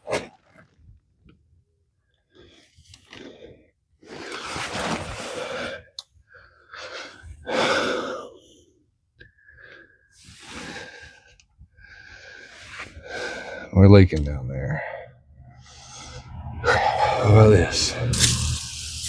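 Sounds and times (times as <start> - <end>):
man breathing heavily: 11.8 - 13.8, 14.8 - 19.0
sighs: 11.8 - 13.8, 14.8 - 19.0.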